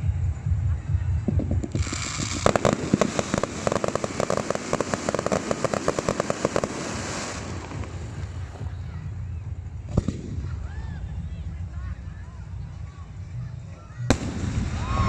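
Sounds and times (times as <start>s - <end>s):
fireworks crackling: 1.5s - 9.2s, 14.1s - 15.0s
hiss: 1.8s - 7.7s.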